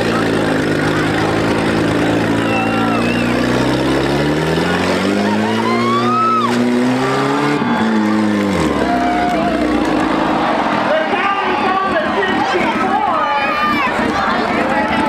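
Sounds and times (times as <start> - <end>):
small car engine revving: 0.0 - 10.9.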